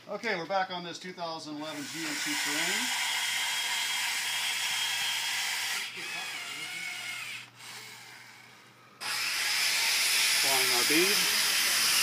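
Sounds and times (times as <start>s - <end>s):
small motor whining: 1.7s - 12.0s.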